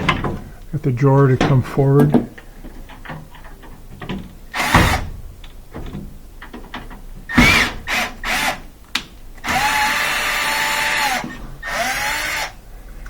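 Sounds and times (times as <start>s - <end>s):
clicks and knocks of handling: 0.0s - 4.4s, 5.4s - 7.2s
power driver motor running: 9.4s - 12.6s.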